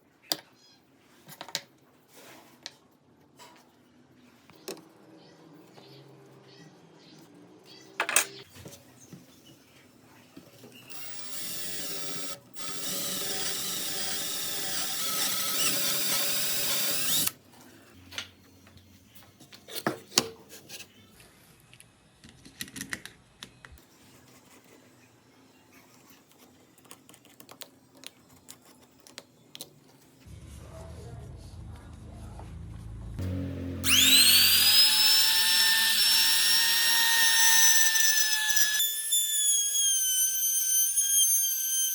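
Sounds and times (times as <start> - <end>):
small power tool motor: 10.9 - 17.3, 33.8 - 41.9.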